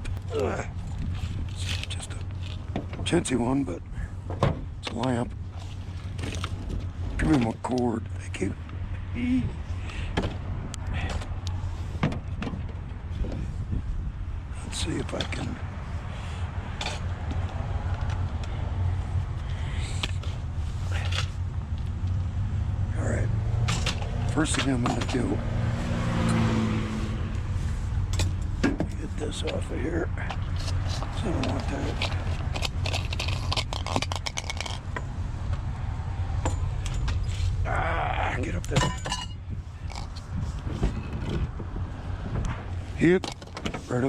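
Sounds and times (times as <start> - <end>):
steady low rumble: 0.0 - 44.0
vehicle engine humming: 0.0 - 44.0
clicks and knocks of handled items: 30.2 - 35.7, 42.4 - 44.0.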